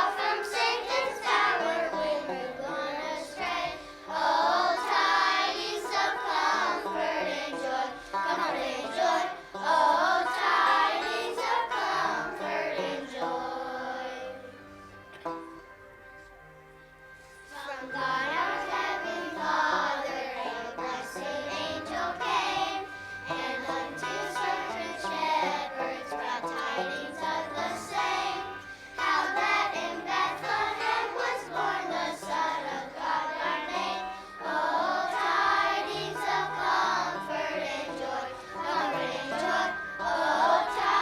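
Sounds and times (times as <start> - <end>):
children's choir singing: 0.0 - 15.7, 17.2 - 41.0
instrumental accompaniment: 0.0 - 41.0.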